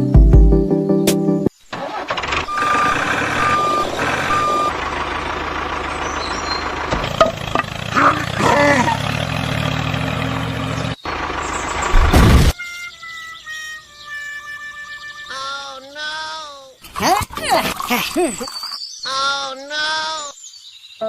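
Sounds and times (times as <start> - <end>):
truck engine running: 1.8 - 12.5
reversing alarm beeping: 2.5 - 4.8.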